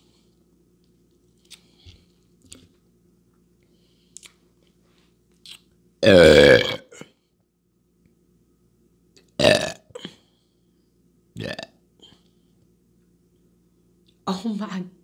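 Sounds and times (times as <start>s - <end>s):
woman belching loudly: 6.0s - 7.0s, 9.4s - 10.0s.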